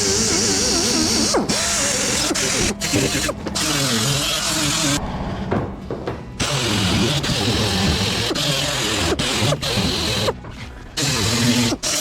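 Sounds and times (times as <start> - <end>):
handheld power tool running: 6.4 - 10.4, 11.0 - 12.0.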